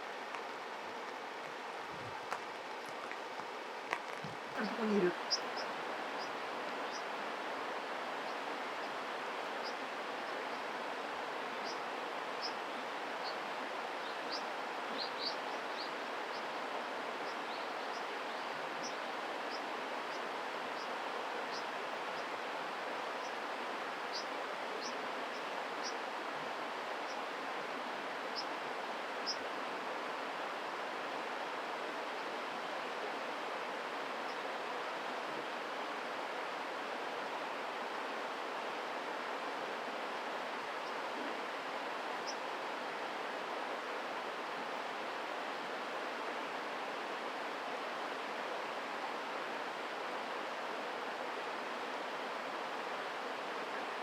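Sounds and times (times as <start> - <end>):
mountain stream rushing: 0.0 - 54.0.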